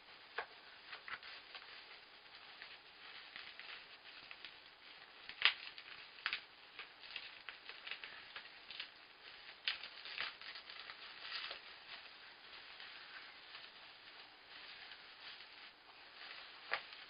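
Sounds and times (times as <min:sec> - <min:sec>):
plastic items clicking and rustling: 0:05.2 - 0:15.5.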